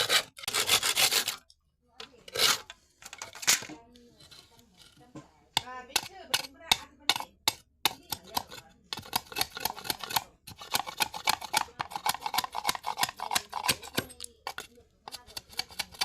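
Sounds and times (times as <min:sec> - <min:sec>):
blade cutting bamboo: 0:00.0 - 0:01.4, 0:02.2 - 0:02.7, 0:06.0 - 0:16.0.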